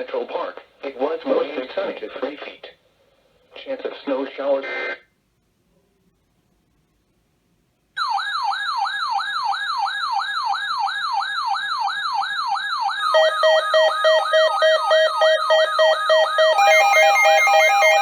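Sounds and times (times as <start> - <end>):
electronic siren falling sweep: 13.0 - 18.0
higher beep pattern: 13.0 - 18.0
pulsing beep: 13.0 - 18.0.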